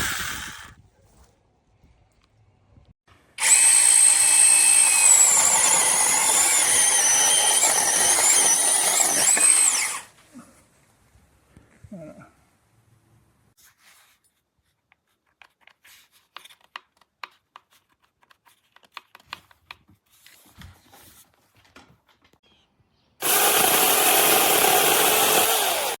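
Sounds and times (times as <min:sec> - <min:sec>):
mini chainsaw running: 0:00.0 - 0:00.7, 0:03.4 - 0:10.1, 0:23.2 - 0:26.0.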